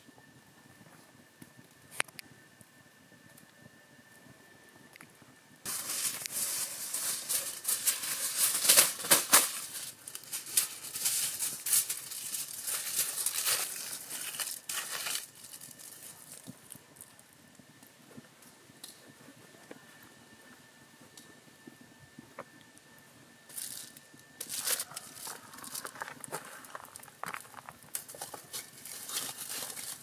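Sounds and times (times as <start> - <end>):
sheet material crinkling: 5.7 - 17.2, 23.6 - 30.0.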